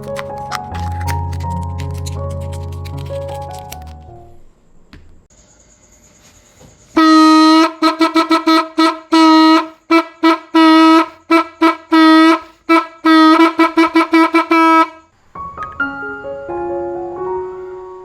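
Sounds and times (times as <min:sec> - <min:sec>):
horn blasts and toots: 0:07.0 - 0:15.1.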